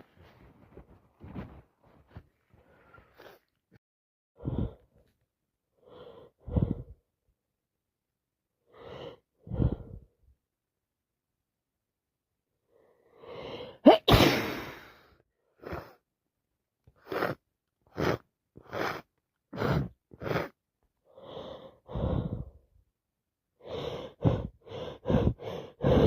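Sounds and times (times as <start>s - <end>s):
woman sneezing: 13.8s - 15.0s
sharp breaths: 21.2s - 22.6s, 23.6s - 26.0s.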